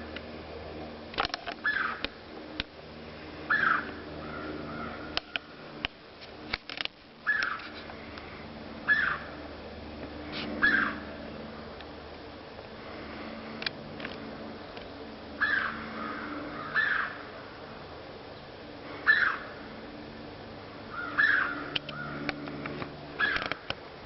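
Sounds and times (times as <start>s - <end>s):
harsh animal calls: 3.5s - 5.4s, 8.9s - 9.4s, 10.6s - 11.1s, 15.4s - 17.4s, 18.9s - 19.6s, 20.9s - 22.4s, 23.2s - 23.5s
sharp clicks: 21.7s - 23.8s.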